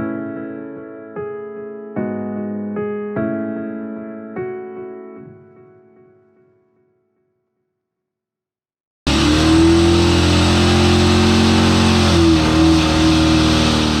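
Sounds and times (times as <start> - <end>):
engine running steadily: 9.1 - 14.0.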